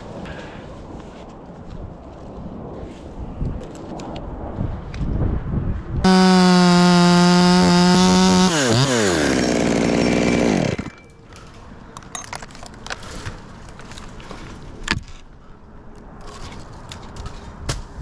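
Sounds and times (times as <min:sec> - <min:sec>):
chainsaw running: 0:06.1 - 0:11.0.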